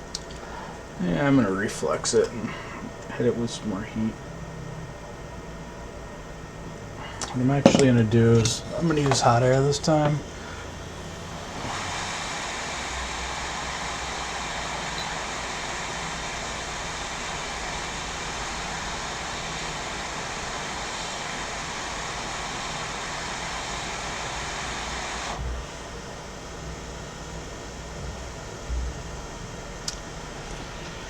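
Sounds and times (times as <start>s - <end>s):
hot air station blowing air: 0.0s - 31.0s.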